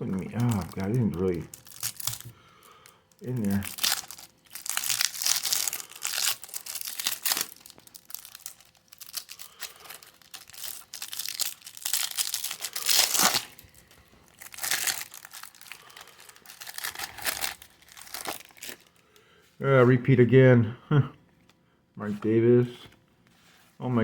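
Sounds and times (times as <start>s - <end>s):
wrapper crinkling and tearing: 0.0s - 19.0s.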